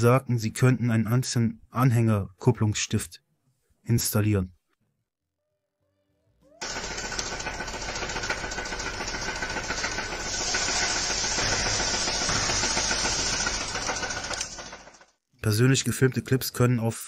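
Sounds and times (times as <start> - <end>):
vehicle engine running: 6.6 - 15.0
hiss: 9.7 - 14.6.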